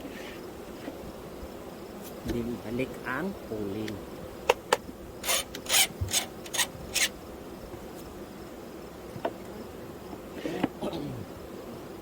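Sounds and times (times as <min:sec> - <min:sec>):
metal tool scraping wood: 0:05.2 - 0:07.1.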